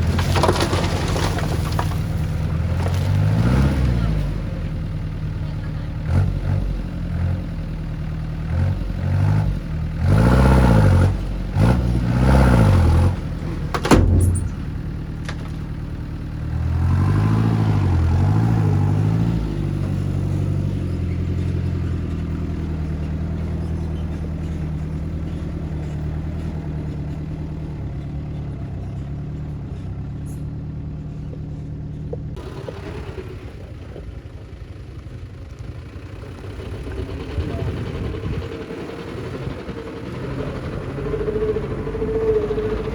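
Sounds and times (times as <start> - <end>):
heavy diesel engine revving: 2.6 - 27.2, 36.1 - 42.9
sharp metal clank: 13.8 - 15.6.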